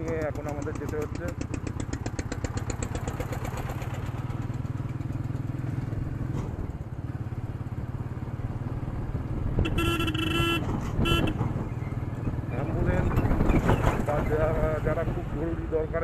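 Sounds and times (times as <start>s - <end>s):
motorcycle engine running: 0.0s - 15.8s
vehicle horn: 9.6s - 11.4s.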